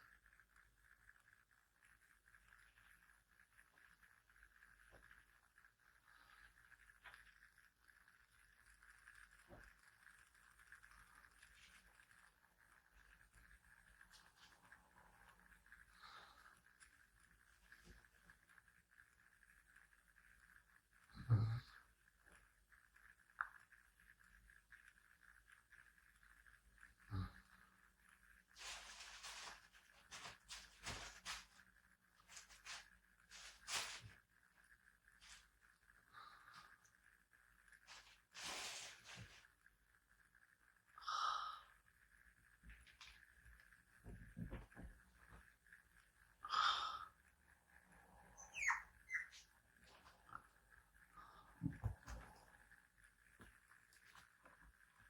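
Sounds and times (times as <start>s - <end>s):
bedding rustling: 28.6s - 31.6s, 32.2s - 34.2s
thin hiss: 37.8s - 39.6s.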